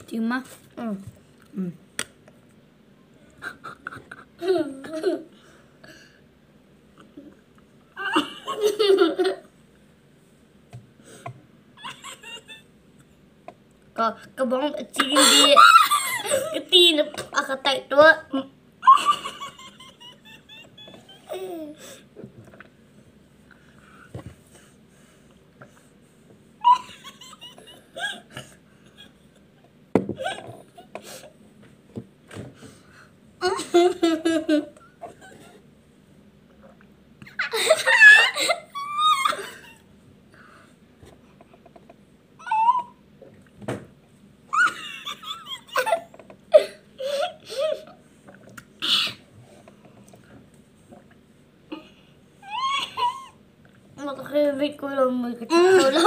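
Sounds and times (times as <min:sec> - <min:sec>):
wordless vocal sounds and giggles: 0:03.2 - 0:05.4, 0:18.8 - 0:22.0
child whining: 0:42.4 - 0:43.0, 0:51.7 - 0:53.4.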